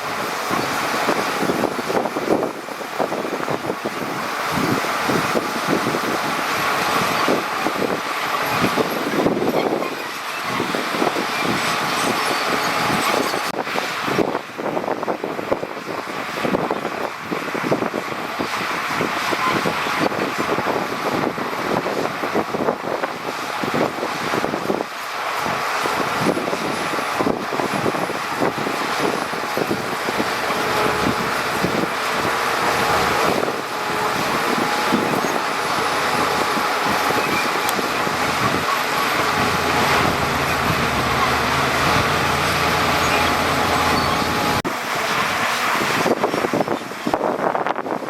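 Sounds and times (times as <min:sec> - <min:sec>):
heavy machinery diesel engine: 0:00.0 - 0:48.0.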